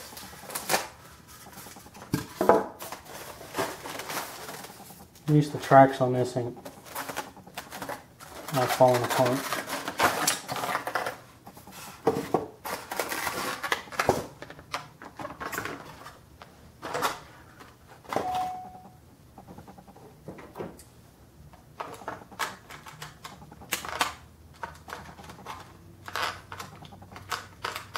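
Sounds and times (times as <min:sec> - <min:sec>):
clicks and rattles of model parts: 0:21.8 - 0:27.9.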